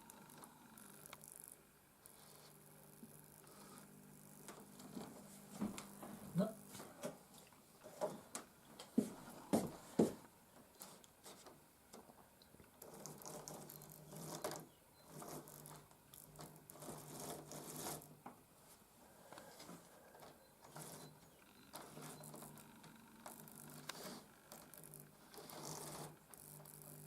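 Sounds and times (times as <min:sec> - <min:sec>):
model train motor humming: 0:20.2 - 0:27.0.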